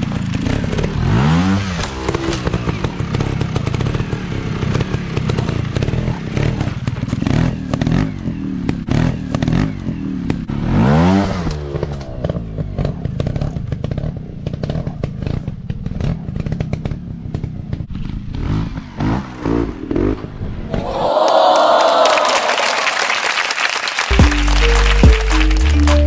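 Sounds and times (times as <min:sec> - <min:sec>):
motorcycle engine revving: 0:00.0 - 0:20.7.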